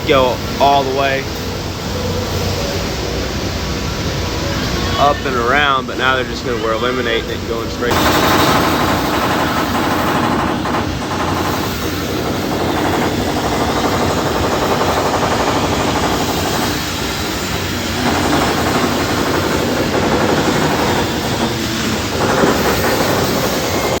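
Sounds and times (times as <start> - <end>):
industrial machinery noise: 0.0 - 24.0
fast steady rattle: 7.9 - 24.0.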